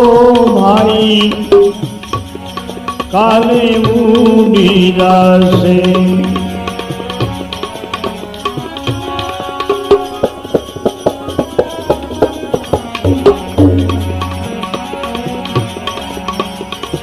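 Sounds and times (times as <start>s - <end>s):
held instrument tones: 0.0s - 17.0s
drum strokes: 8.0s - 15.8s.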